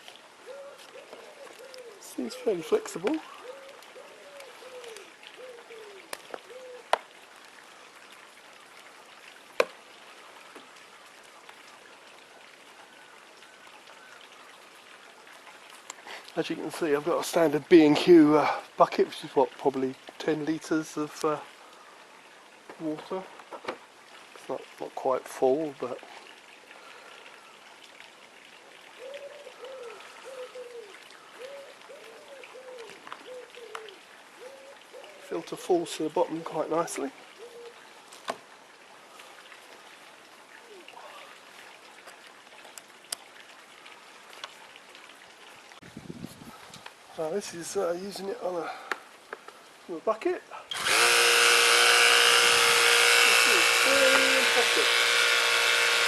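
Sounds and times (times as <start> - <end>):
faint steady hiss: 0.0 - 56.0
pigeon cooing: 0.4 - 7.0, 29.0 - 35.3, 37.4 - 37.8.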